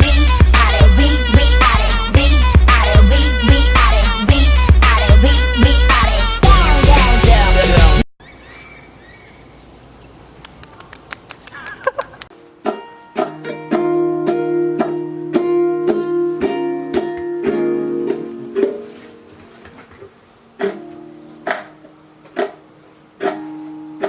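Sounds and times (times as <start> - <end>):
acoustic string instrument strummed: 12.4 - 24.0.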